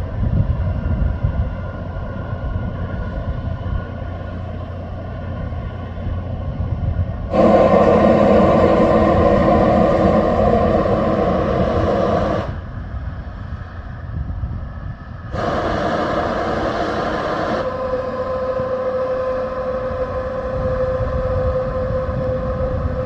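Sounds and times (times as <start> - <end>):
steady hum: 0.0 - 23.0
rumble and hiss of venting: 6.1 - 23.0.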